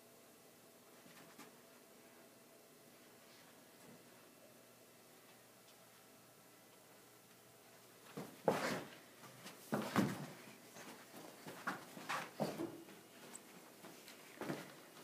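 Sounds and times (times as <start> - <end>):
footsteps thumping on floor: 9.7 - 10.4, 11.5 - 12.9.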